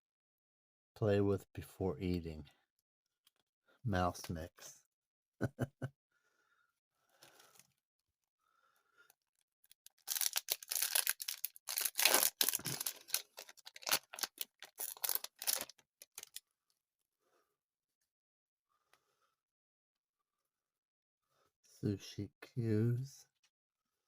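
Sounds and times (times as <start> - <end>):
paper crinkling and rustling: 9.9 - 16.4.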